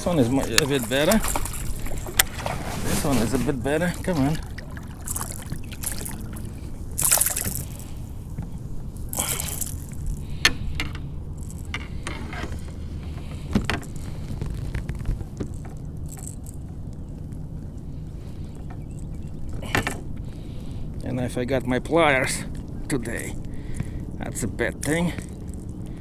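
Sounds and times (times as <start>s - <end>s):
steady low rumble: 0.0s - 26.0s
clicks and knocks of fishing gear: 0.4s - 20.3s
fish splashing: 0.6s - 2.6s, 4.0s - 10.4s.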